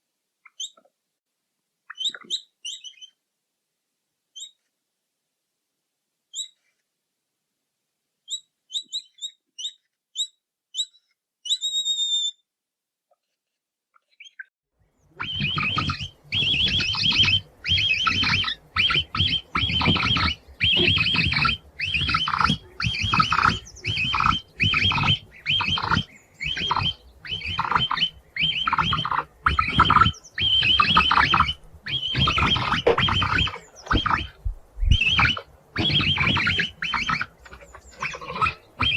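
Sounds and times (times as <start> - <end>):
capybara whistling chirps: 1.9 - 3.2, 8.3 - 12.4, 15.2 - 38.9
capybara rough pulsing calls: 15.2 - 38.9.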